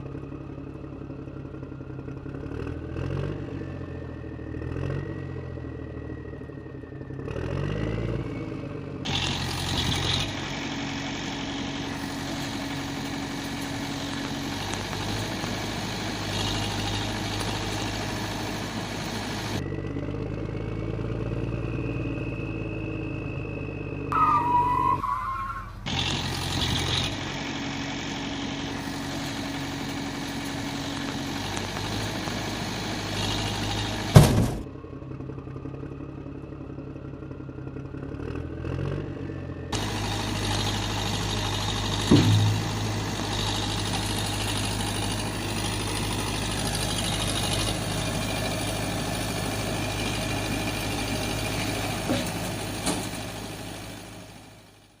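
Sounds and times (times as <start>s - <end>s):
tractor engine running: 0.0s - 55.0s
sharp knock: 42.1s - 43.0s.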